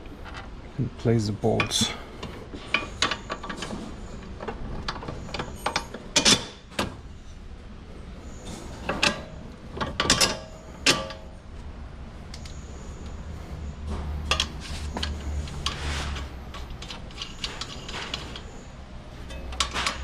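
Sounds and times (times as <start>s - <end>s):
metal parts clinking: 14.3s - 20.0s.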